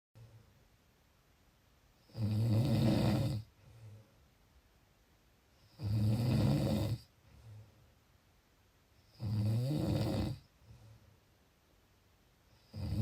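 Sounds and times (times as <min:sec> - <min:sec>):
person snoring: 0:02.1 - 0:03.5, 0:05.7 - 0:07.1, 0:09.1 - 0:10.4, 0:12.6 - 0:13.0
faint breath: 0:03.5 - 0:04.4, 0:07.1 - 0:08.0, 0:10.5 - 0:11.4.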